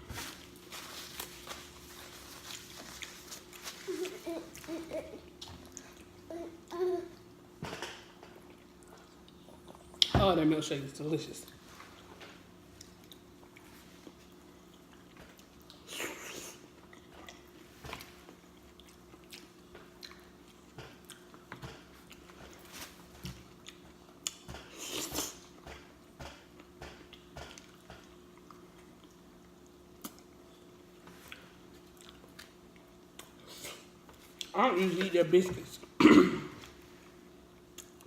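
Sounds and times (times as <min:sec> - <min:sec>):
person chewing with mouth clicks: 0:12.8 - 0:22.4, 0:23.5 - 0:25.4, 0:26.5 - 0:30.4, 0:31.3 - 0:34.6, 0:37.6 - 0:38.0.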